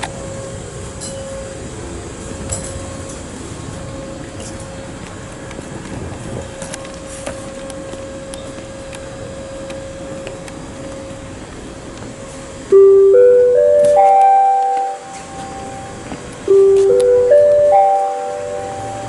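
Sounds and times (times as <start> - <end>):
background hum with held tone: 0.0 - 19.0
loudspeaker four-note chime: 12.7 - 19.0.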